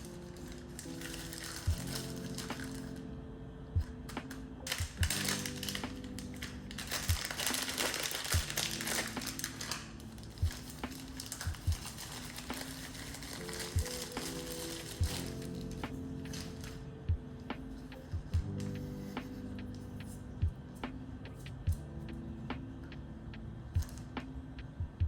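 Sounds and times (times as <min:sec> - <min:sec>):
packaging crinkling and rustling: 0:00.0 - 0:03.0, 0:03.8 - 0:16.9
soft background music: 0:00.0 - 0:25.0.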